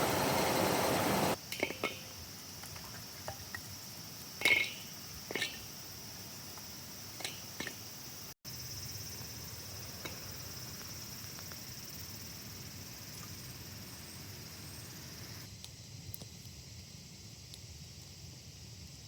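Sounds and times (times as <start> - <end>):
high insect chorus: 0.0 - 19.0.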